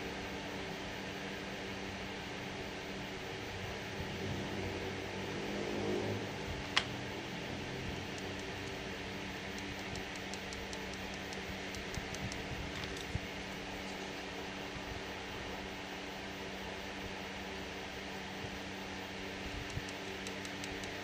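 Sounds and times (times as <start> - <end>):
background hiss and hum: 0.0 - 21.0.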